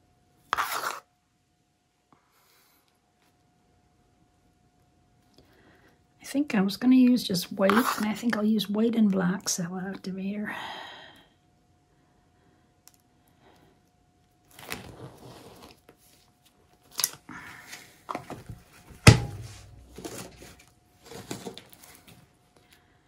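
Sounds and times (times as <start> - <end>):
paint containers rustling and scraping: 0.6 - 1.0, 7.6 - 8.4, 18.1 - 22.2.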